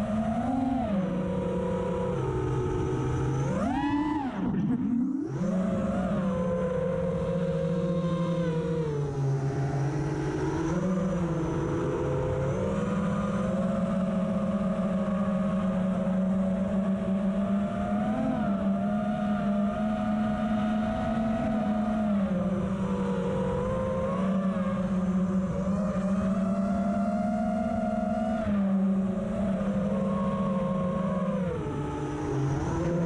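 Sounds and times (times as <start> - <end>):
drone propellers whining: 0.0 - 33.0.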